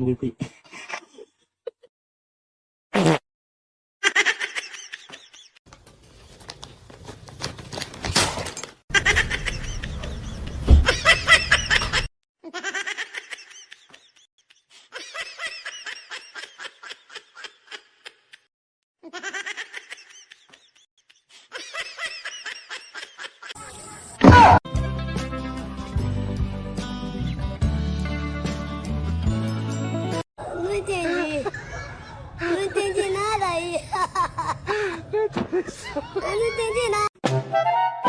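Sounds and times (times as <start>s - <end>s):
high-pitched laughter: 4.0s - 5.5s, 8.9s - 10.3s, 10.9s - 23.9s, 30.9s - 33.0s, 33.8s - 37.1s.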